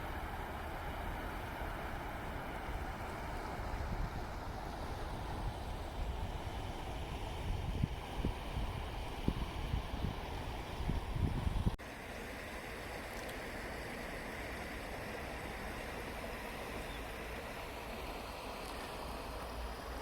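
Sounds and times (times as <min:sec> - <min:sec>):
flowing water rushing: 0:00.0 - 0:11.2, 0:11.8 - 0:20.0
wind buffeting microphone: 0:02.3 - 0:11.8.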